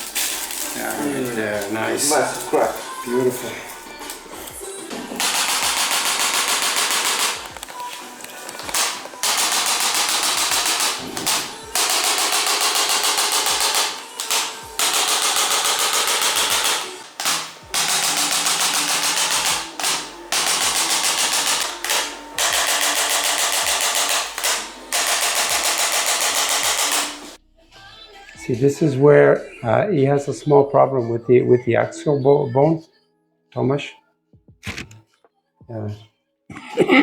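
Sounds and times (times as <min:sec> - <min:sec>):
electric percussion instrument tapping: 0:05.2 - 0:27.4.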